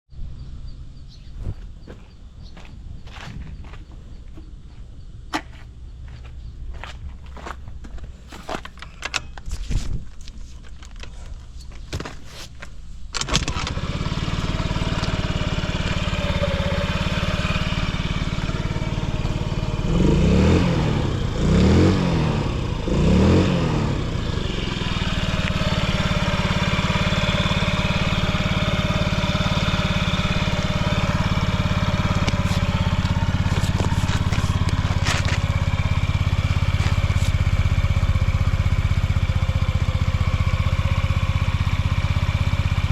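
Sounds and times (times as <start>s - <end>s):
scooter engine idling: 13.2s - 42.9s.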